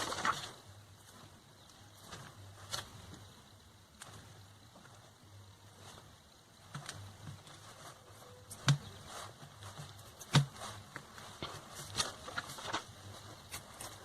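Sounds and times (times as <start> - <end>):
light taps and rustles: 6.7 - 14.0.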